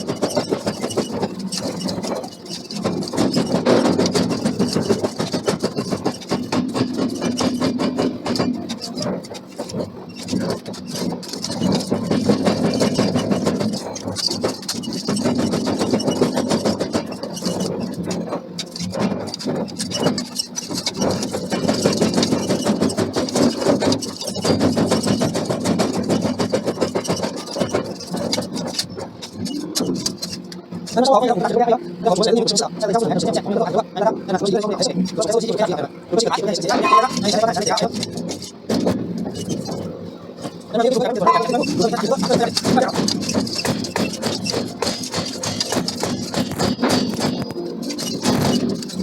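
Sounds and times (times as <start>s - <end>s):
rapid clattering knocks: 0.0s - 49.0s.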